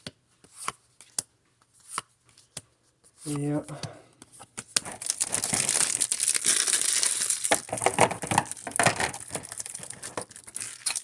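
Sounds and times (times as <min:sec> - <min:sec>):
packaging wrappers crumpling: 0:04.8 - 0:11.0.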